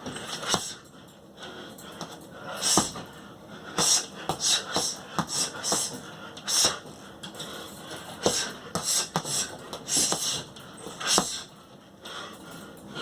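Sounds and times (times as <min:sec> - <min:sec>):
sharp hissing exhalations: 0:03.8 - 0:06.8, 0:08.2 - 0:11.5.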